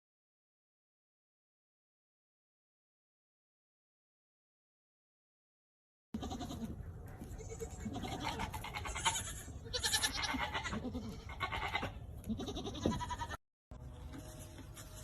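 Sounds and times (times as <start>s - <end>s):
goat kids bleating: 6.2s - 13.4s, 14.4s - 15.0s.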